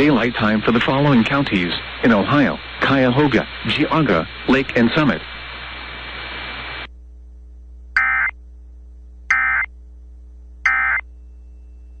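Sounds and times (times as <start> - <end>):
background hiss: 0.0 - 6.9
steady hum: 0.0 - 12.0.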